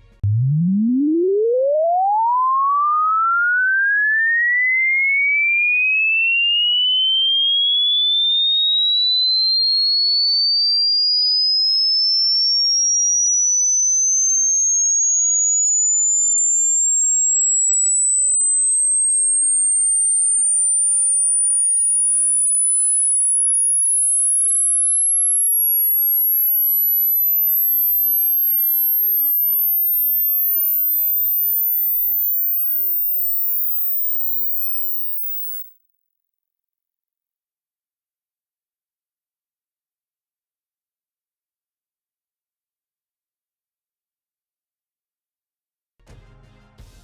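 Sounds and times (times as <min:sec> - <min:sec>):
rising sine tone: 0:00.0 - 0:05.4, 0:06.5 - 0:35.8.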